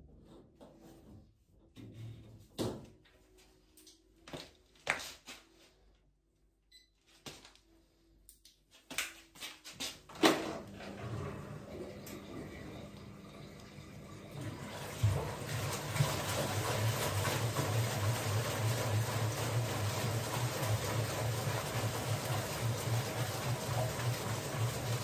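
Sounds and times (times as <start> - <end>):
washing machine filling with water: 10.2 - 25.0.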